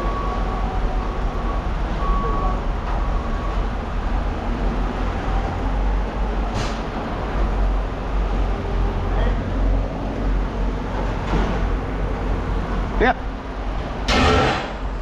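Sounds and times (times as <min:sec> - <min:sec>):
reversing alarm beeping: 0:00.0 - 0:04.0.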